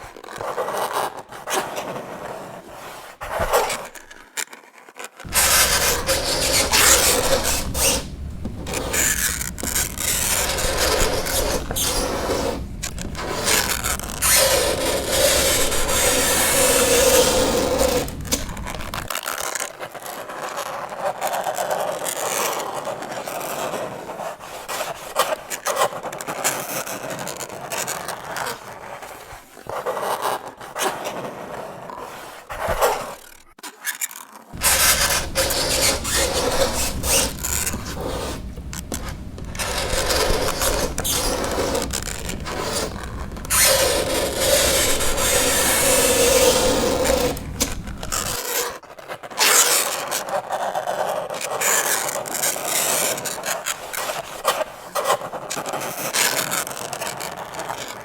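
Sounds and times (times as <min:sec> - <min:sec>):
fingernails scraping chalkboard: 0:05.2 - 0:19.1, 0:34.6 - 0:48.7
drawn-out squeal: 0:05.3 - 0:19.1, 0:34.6 - 0:48.4.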